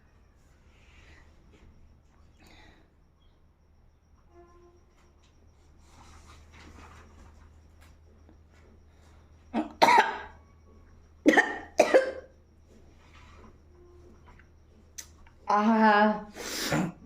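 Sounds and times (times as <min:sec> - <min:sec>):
woman coughing: 0:09.6 - 0:10.3, 0:11.3 - 0:12.3, 0:16.6 - 0:17.0.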